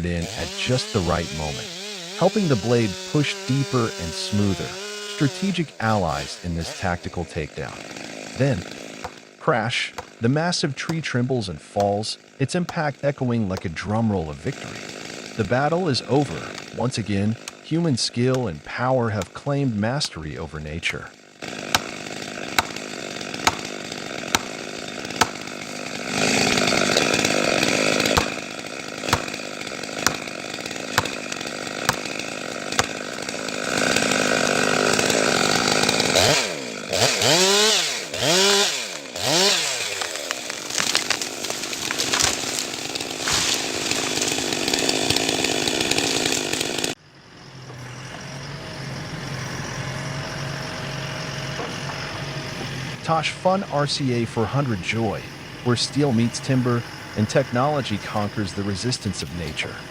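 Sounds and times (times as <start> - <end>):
chainsaw revving: 0.0 - 47.0, 49.2 - 59.9
steady engine hum: 47.1 - 59.9.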